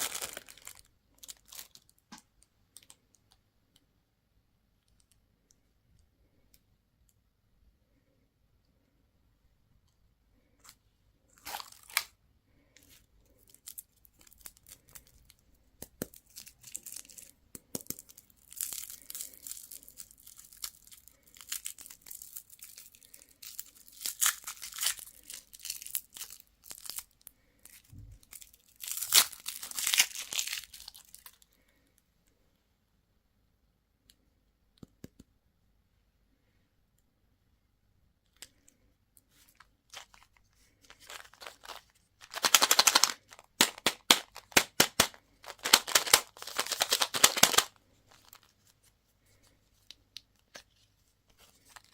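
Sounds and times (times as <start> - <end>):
wrappers tearing and crinkling: 0.0 - 2.0, 11.4 - 12.1, 18.4 - 27.2, 28.3 - 31.4, 40.9 - 48.5.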